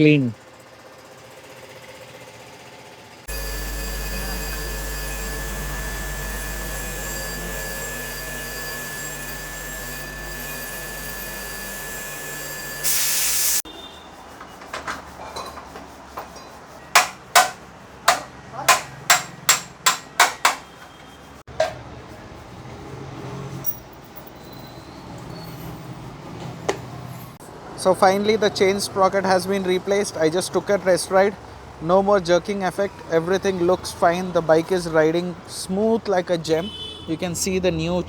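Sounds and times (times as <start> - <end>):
workshop hum with high whine: 3.3 - 38.0
loud burst of hiss: 12.8 - 13.6
hammer taps on metal: 17.0 - 20.7.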